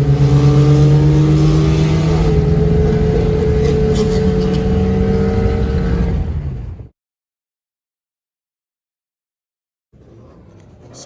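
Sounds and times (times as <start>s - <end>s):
car engine at high revs: 0.0s - 6.9s.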